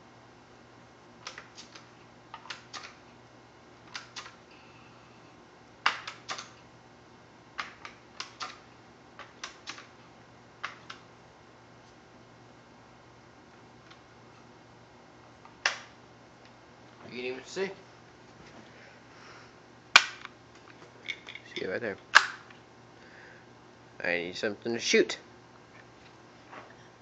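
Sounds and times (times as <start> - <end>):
air rifle mechanism clicks: 1.2 - 3.0, 3.9 - 4.4, 5.8 - 6.6, 7.6 - 8.6, 9.2 - 9.9, 22.1 - 22.6.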